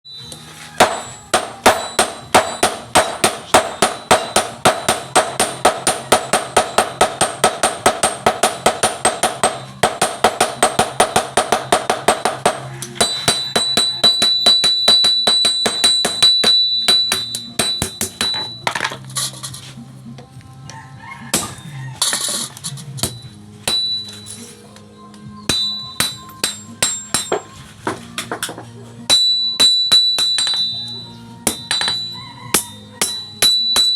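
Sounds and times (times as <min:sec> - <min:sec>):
music: 0:00.0 - 0:33.9
hammer striking metal: 0:00.2 - 0:19.6, 0:21.3 - 0:24.6, 0:25.4 - 0:33.9.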